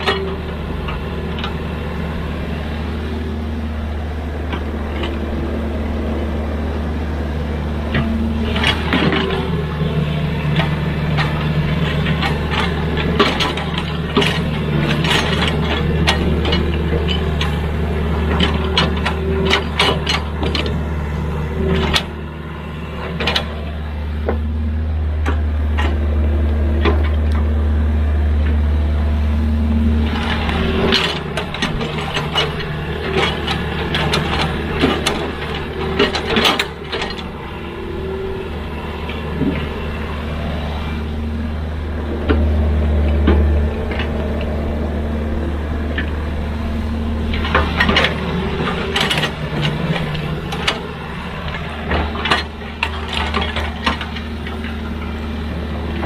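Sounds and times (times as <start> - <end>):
excavator diesel engine droning: 0.0 - 56.0.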